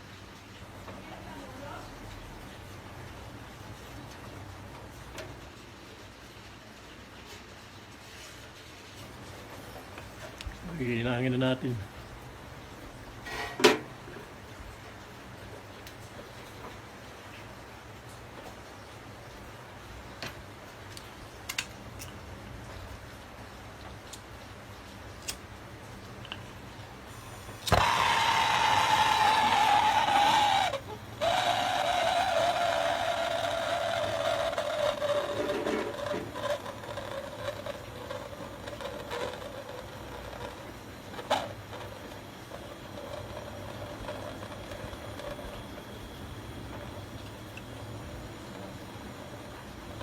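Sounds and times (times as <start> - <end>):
gas torch hissing and whistling: 27.0 - 50.0.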